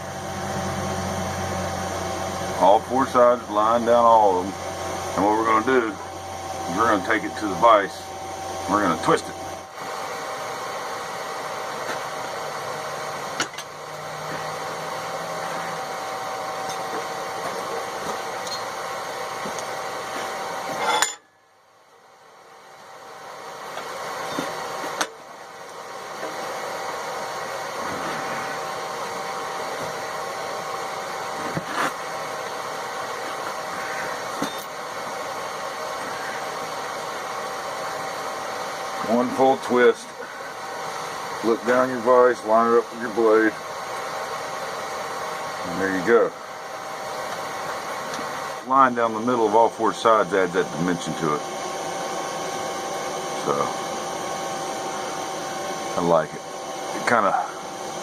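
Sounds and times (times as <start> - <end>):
forge rushing hum: 0.0 - 21.0.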